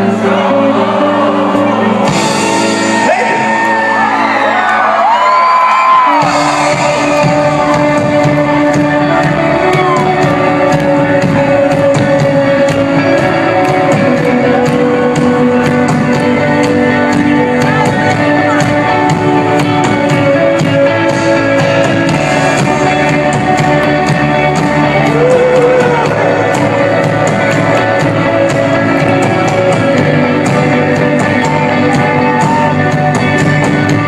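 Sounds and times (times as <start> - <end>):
person singing: 0.0 - 4.3, 6.1 - 34.0
crowd shouting: 0.0 - 10.8, 24.8 - 27.7, 29.6 - 33.2
sustained guitar chords: 5.7 - 34.0
cymbal and drum beat: 6.2 - 34.0.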